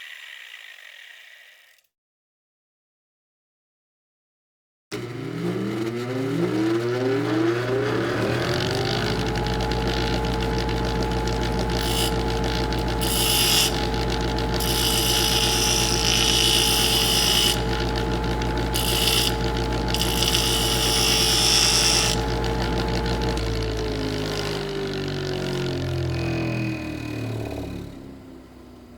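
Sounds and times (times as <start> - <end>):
electric grinder motor whine: 4.9 - 28.2
harsh high grinding: 5.0 - 24.7.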